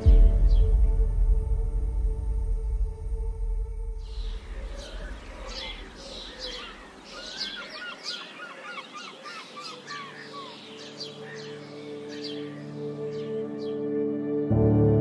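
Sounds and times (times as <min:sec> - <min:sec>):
small birds chirping: 0:04.0 - 0:13.8.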